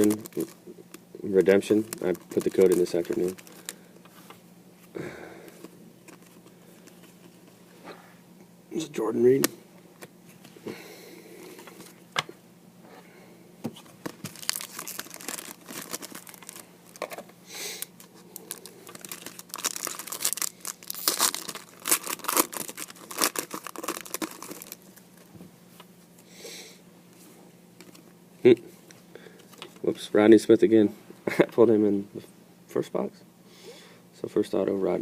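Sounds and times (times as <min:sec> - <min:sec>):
card pack wrappers crinkling: 0:00.0 - 0:00.6, 0:01.3 - 0:03.9, 0:13.8 - 0:25.3.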